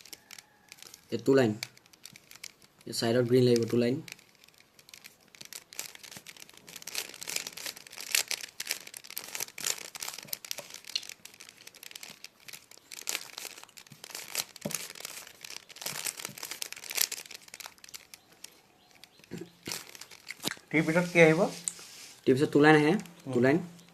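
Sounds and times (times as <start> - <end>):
plastic puzzle cube clicking: 0.0 - 20.7.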